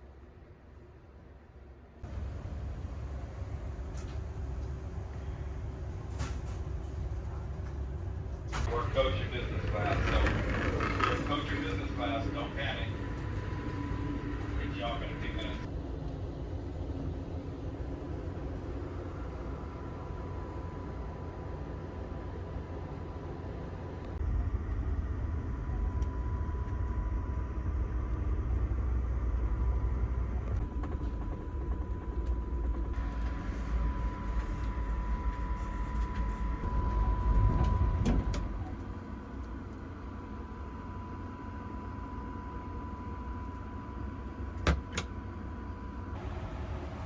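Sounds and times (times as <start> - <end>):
train rumbling on track: 2.0 - 40.9, 46.1 - 47.0
steady high hum: 8.6 - 15.7, 32.0 - 47.0.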